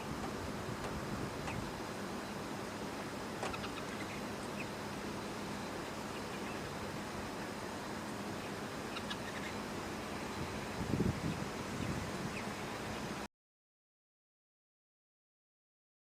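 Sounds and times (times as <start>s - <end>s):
steady background hiss: 0.0s - 13.3s
faint short bird calls: 3.4s - 4.8s, 8.4s - 9.7s.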